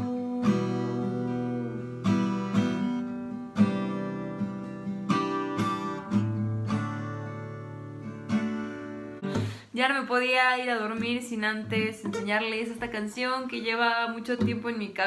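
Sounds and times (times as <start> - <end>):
acoustic guitar strumming chords: 0.0 - 9.6.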